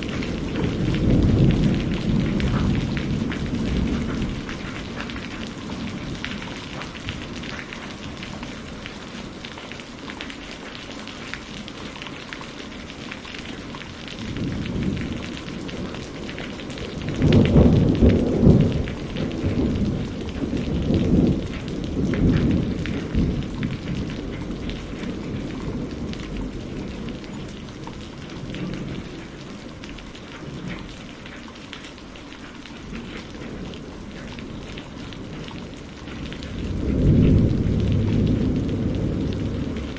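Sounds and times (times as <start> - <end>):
rolling thunderclap: 0.0 - 9.1, 13.7 - 29.4, 32.9 - 39.9
steady rain falling: 0.0 - 39.9.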